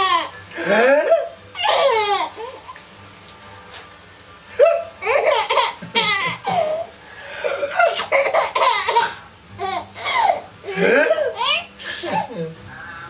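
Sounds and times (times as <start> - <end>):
baby laughing: 0.0 - 2.8, 4.6 - 6.9, 7.5 - 12.5.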